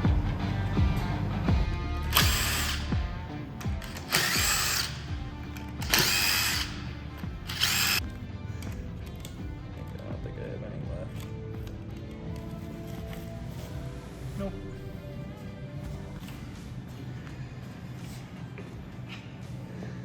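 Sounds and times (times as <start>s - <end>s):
background music: 0.0s - 20.0s
electric power drill running: 2.0s - 8.0s.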